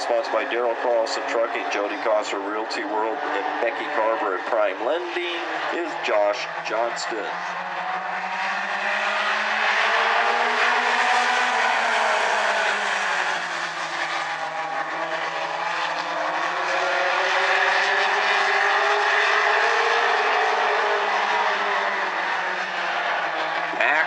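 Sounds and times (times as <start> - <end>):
race car engines: 0.0 - 24.0.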